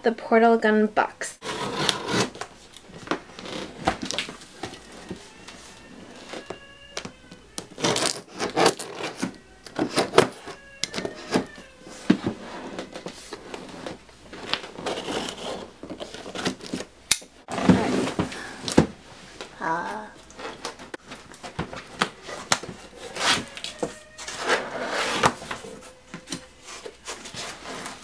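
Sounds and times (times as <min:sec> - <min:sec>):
cardboard rustling and scraping: 0:01.4 - 0:06.6, 0:07.7 - 0:16.9, 0:17.5 - 0:18.9, 0:20.4 - 0:28.0.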